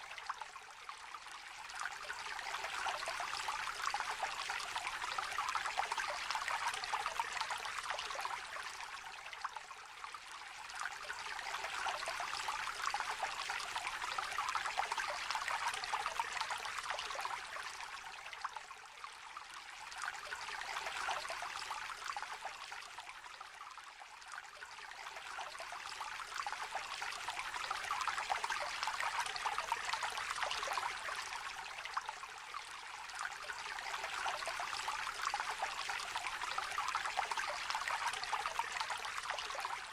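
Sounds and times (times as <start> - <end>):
stream babbling over stones: 24.2 - 39.9.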